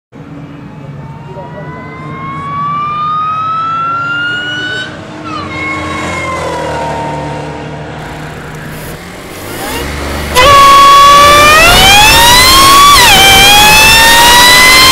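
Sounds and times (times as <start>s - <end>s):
supercharger whining: 8.0s - 14.9s.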